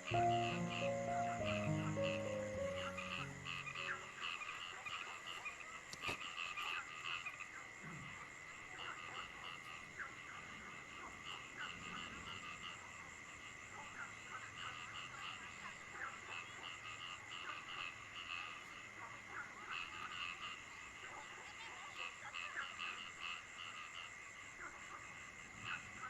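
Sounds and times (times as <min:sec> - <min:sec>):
faint falling rain: 0:00.0 - 0:04.4
frogs calling: 0:00.0 - 0:26.0.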